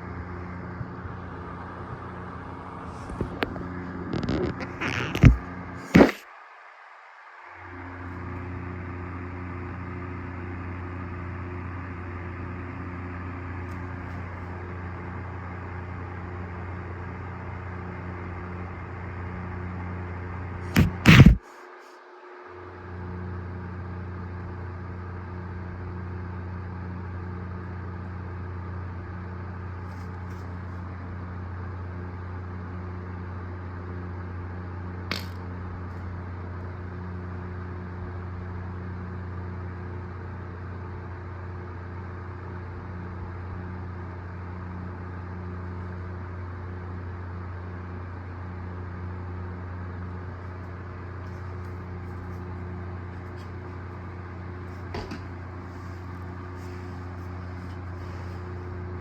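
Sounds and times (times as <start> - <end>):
low mechanical hum: 0.0 - 59.0
sharp click: 20.7 - 21.4, 35.1 - 35.4.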